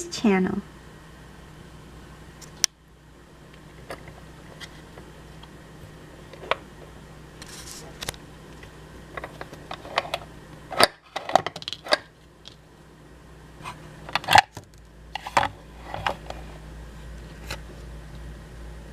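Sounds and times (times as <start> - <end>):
plastic toys clicking and clattering: 10.8 - 12.1.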